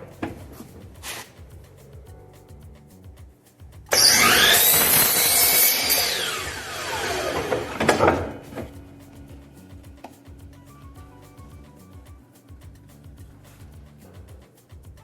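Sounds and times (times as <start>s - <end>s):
electric saw cutting wood: 3.9s - 8.7s.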